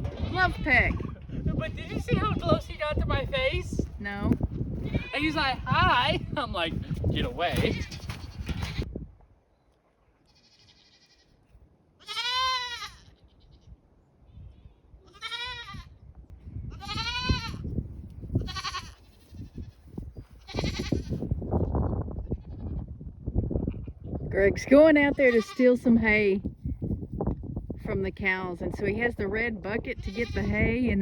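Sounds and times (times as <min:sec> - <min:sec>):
goats bleating: 0:00.0 - 0:02.6, 0:04.8 - 0:05.6, 0:10.3 - 0:11.4, 0:12.0 - 0:13.4, 0:15.1 - 0:15.9, 0:16.7 - 0:17.6, 0:18.4 - 0:19.8, 0:20.4 - 0:21.2, 0:25.0 - 0:25.8, 0:30.0 - 0:30.7.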